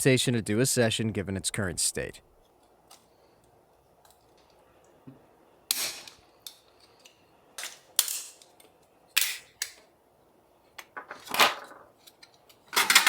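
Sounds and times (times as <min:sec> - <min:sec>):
small hard parts clicking: 0:10.8 - 0:13.0.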